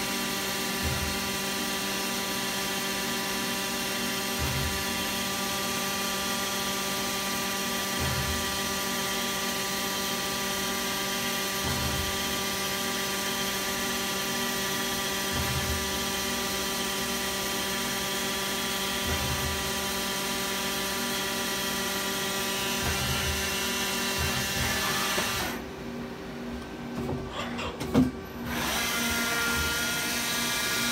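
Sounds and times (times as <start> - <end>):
machine whine: 21.2 - 25.8.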